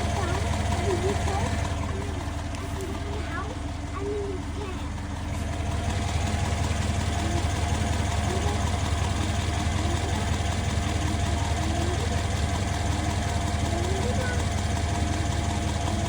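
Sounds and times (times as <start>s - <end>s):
car engine idling: 0.0s - 16.0s
engine knocking: 0.0s - 16.0s.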